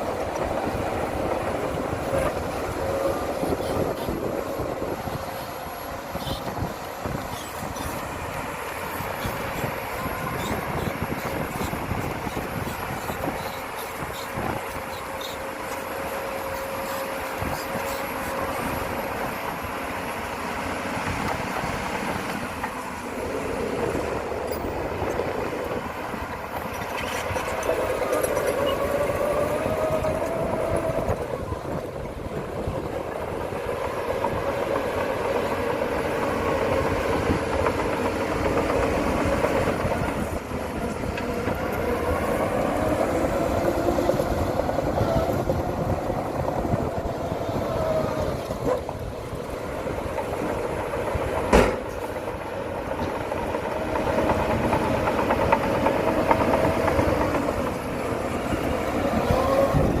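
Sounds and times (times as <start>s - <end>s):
heavy machinery diesel engine: 0.0s - 60.0s
sharp bang: 51.5s - 51.9s.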